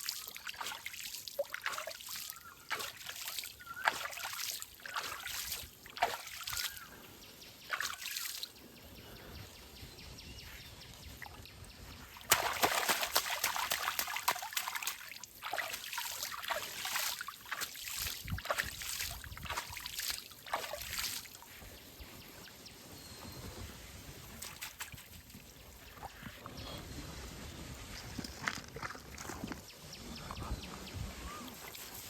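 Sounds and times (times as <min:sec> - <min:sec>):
water splashing and sloshing: 0:00.0 - 0:07.0, 0:07.6 - 0:08.6, 0:11.0 - 0:22.5, 0:24.2 - 0:26.6
faint water trickle: 0:00.0 - 0:07.1.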